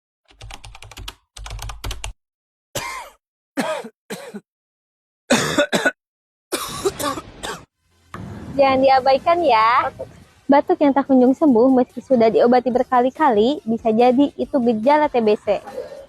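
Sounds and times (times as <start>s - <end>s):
person clearing throat: 2.8s - 4.4s, 5.3s - 6.0s, 6.6s - 7.7s
person coughing: 2.8s - 4.4s, 5.3s - 7.7s.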